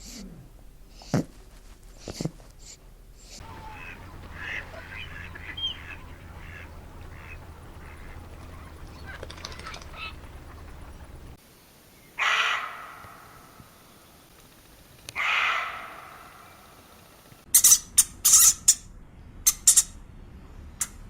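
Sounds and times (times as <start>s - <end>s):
harsh drawn-out bird calls: 3.2s - 11.3s, 12.1s - 14.2s, 15.1s - 18.9s.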